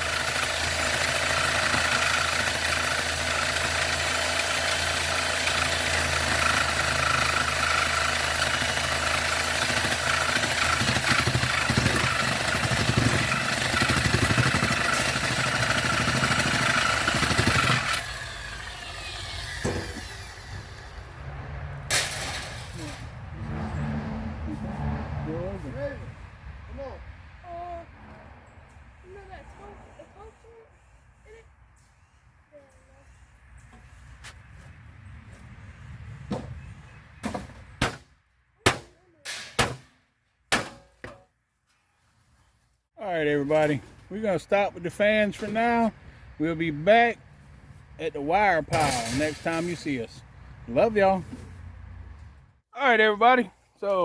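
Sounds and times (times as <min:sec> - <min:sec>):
motor rattling buzz: 0:00.0 - 0:21.1
sharp metal knocks and clanks: 0:21.9 - 0:23.1, 0:37.2 - 0:41.3, 0:48.7 - 0:49.9.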